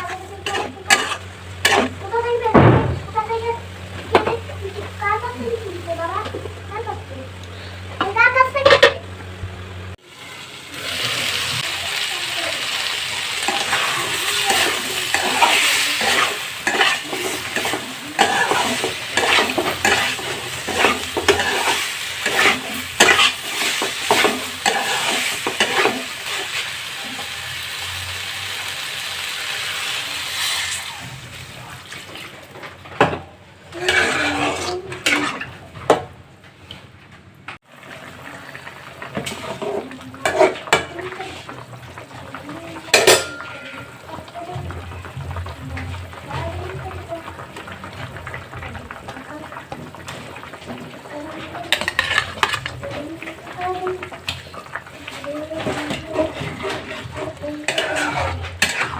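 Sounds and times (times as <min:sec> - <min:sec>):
spatula scraping a pan: 0:00.0 - 0:02.3, 0:13.4 - 0:27.3, 0:33.7 - 0:36.0, 0:39.2 - 0:41.6, 0:51.3 - 0:58.9
food sizzling in a pan: 0:00.0 - 0:36.1, 0:37.6 - 0:58.9.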